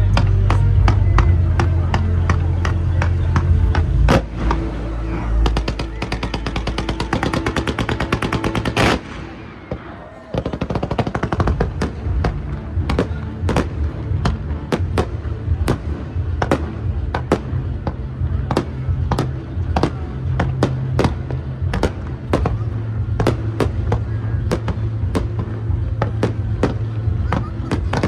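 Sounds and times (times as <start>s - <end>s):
low rumble: 0.0s - 7.1s
fireworks crackling bangs: 0.0s - 28.0s.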